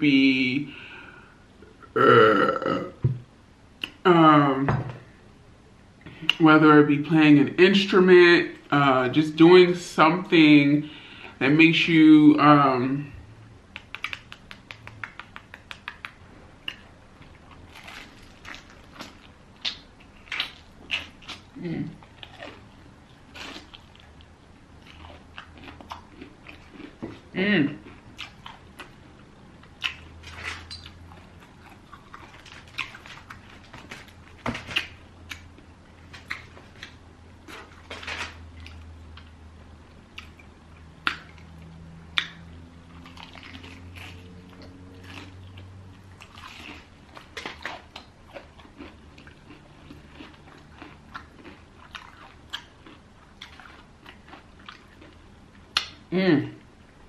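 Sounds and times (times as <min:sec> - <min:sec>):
person chewing crispy fried chicken: 0:13.8 - 0:55.9.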